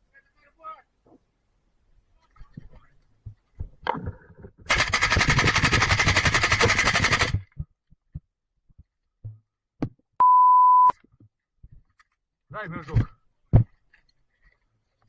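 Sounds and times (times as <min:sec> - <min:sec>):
airsoft rifle full-auto burst: 0:04.7 - 0:07.4
electronic beep: 0:10.2 - 0:10.9.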